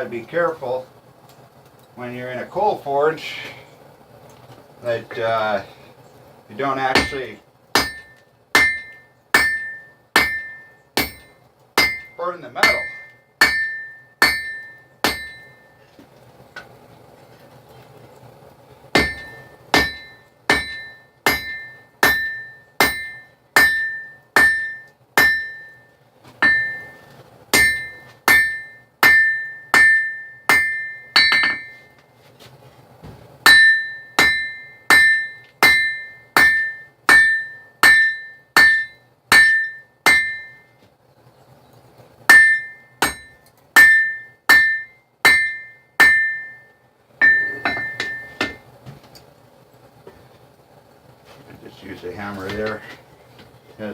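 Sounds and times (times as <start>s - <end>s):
hammer striking steel on anvil: 6.9s - 15.7s, 19.0s - 31.9s, 33.4s - 40.7s, 42.3s - 48.6s.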